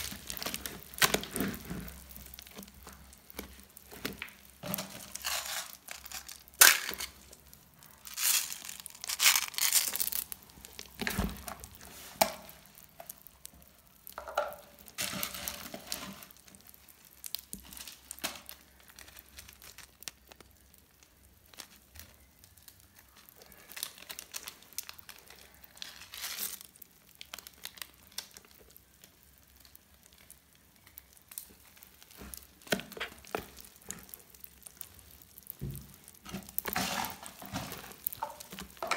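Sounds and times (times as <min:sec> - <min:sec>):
crunchy slime crackling: 0:00.0 - 0:38.9.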